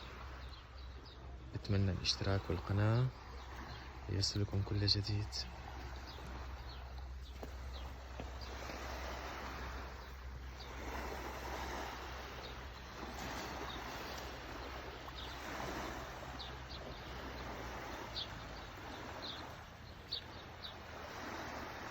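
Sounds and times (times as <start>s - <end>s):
small birds chirping: 0.0s - 21.9s.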